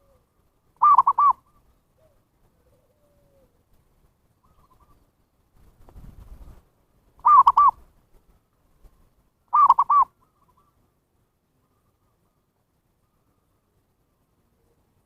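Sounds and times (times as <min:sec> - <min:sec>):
dove cooing: 0:00.0 - 0:03.6, 0:04.4 - 0:05.1, 0:07.2 - 0:07.8, 0:09.5 - 0:10.8.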